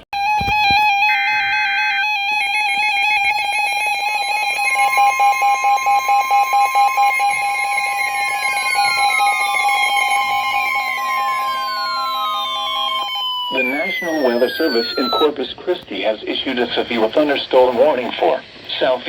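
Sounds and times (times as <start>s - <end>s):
falling sweep tones: 1.0s - 15.4s
pulsing electronic alert tone: 2.4s - 15.3s
digital data noise burst: 3.9s - 15.5s.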